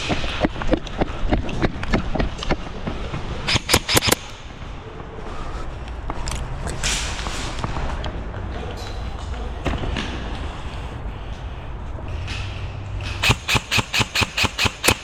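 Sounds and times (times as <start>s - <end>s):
airsoft gun shots: 3.5s - 4.4s, 12.4s - 15.0s.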